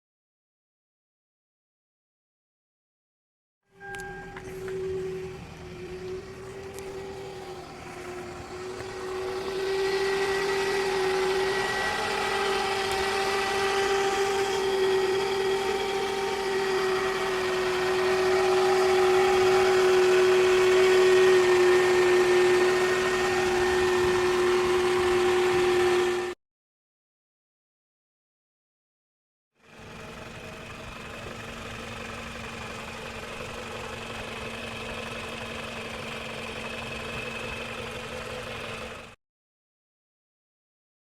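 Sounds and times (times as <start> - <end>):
alternator whine: 3.7 - 26.4
car engine running: 3.8 - 26.4, 29.6 - 39.2.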